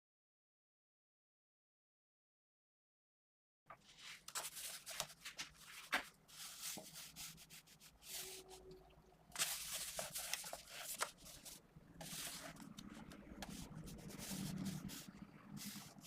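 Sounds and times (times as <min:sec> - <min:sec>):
pencil scratching on paper: 0:09.4 - 0:16.0.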